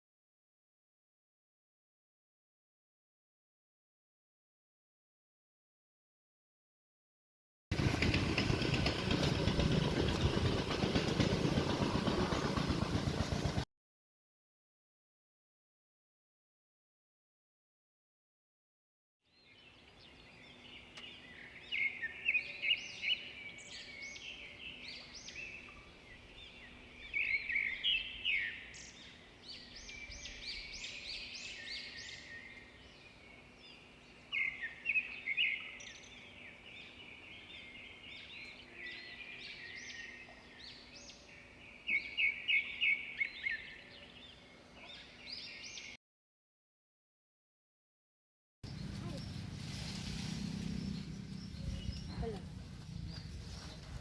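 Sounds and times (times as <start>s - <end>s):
birds chirping: 48.6s - 54.0s.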